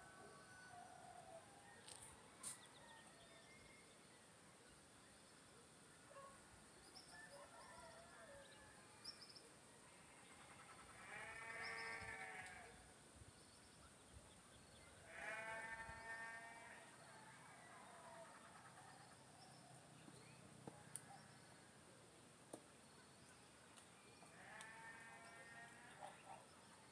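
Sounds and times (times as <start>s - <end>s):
farm animal bleating: 10.0s - 12.8s, 15.0s - 17.0s, 24.3s - 26.2s.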